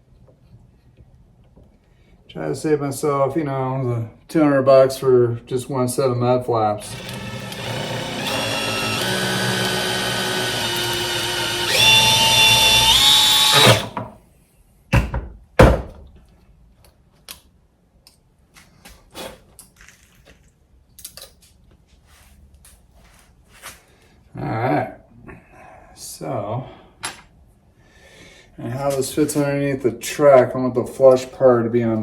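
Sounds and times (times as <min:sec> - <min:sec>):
cordless drill motor whine: 0:06.9 - 0:14.0.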